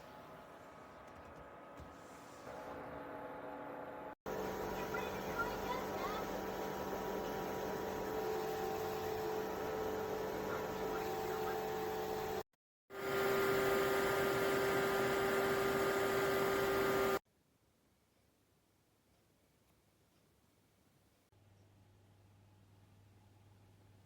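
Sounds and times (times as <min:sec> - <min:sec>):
air cooler fan humming: 0:00.0 - 0:12.4.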